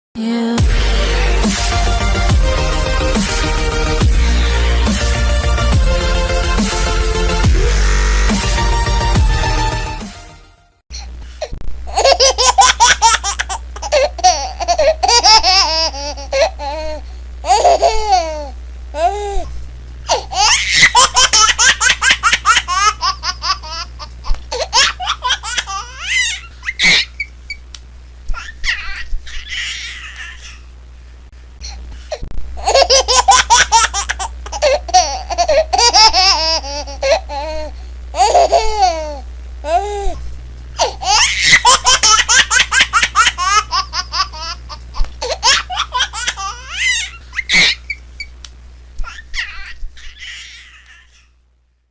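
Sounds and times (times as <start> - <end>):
low hum: 0.6 - 28.4, 30.4 - 49.0
baby laughing: 11.9 - 19.2, 20.1 - 27.3, 28.3 - 30.6, 32.6 - 40.2, 40.8 - 48.0, 49.0 - 51.3.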